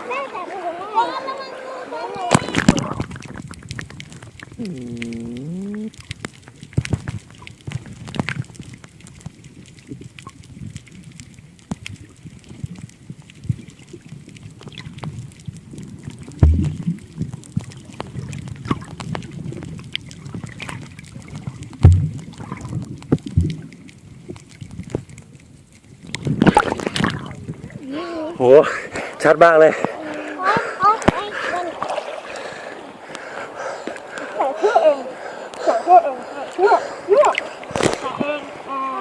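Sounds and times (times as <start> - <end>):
water sloshing and gurgling: 0.0 - 39.0
heavy low thumps: 16.4 - 16.9, 21.8 - 22.2.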